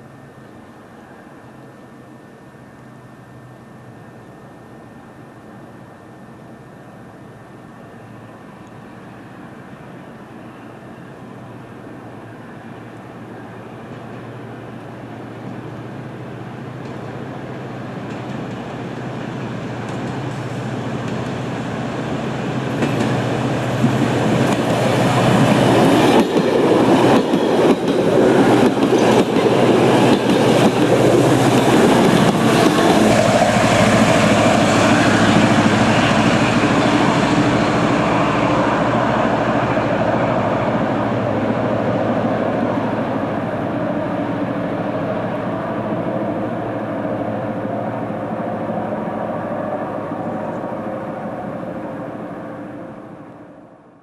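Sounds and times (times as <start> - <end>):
diesel locomotive engine: 0.0 - 54.0
train wheels clattering over rail joints: 22.8 - 23.2.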